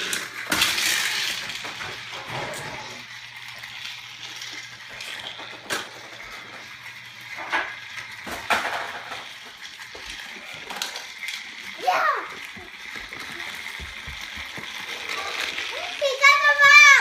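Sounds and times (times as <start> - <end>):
plastic toy train pieces clacking: 0.0 - 17.0.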